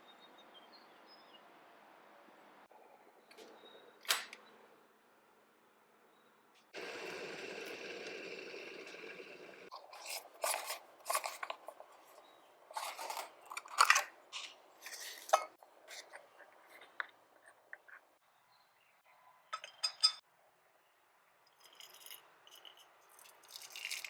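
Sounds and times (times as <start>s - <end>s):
scraping and clattering: 9.7s - 17.1s.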